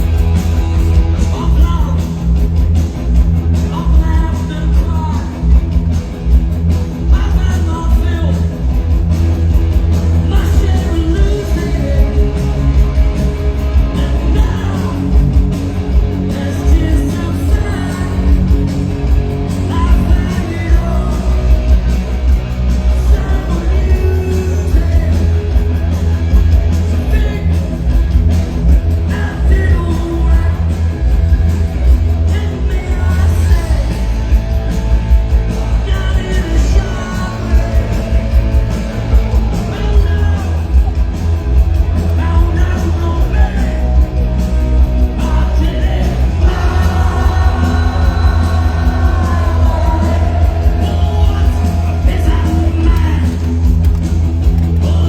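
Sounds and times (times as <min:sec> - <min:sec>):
live punk rock band: 0:00.0 - 0:55.0
person singing: 0:45.1 - 0:53.4.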